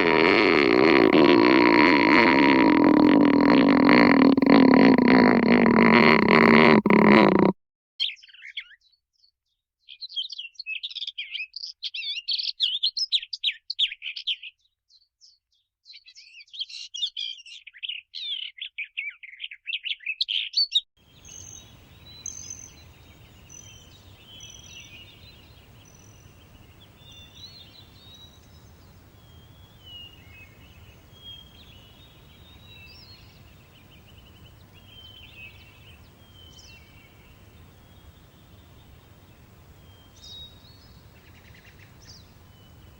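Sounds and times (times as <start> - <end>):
faint bird calls: 0.0 - 7.5
bluebirds chirping: 0.0 - 8.9, 16.0 - 42.9
light breeze: 21.1 - 42.9.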